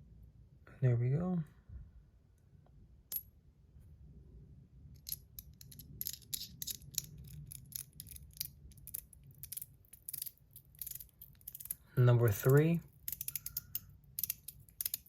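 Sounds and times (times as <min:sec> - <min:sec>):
metal fidget slider clicking: 0:12.4 - 0:15.0.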